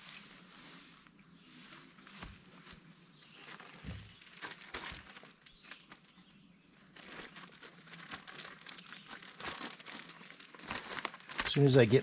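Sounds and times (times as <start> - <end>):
plastic bag crinkling: 3.3 - 12.0.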